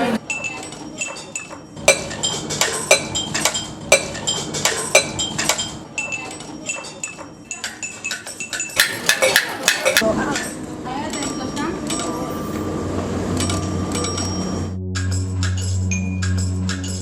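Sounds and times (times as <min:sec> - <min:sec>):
metallic clinks: 0:00.2 - 0:12.4.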